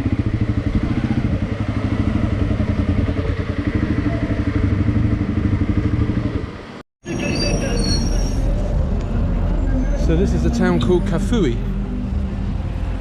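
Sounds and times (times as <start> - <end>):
motorcycle engine running: 0.0 - 6.6
high squeaks: 7.1 - 8.8.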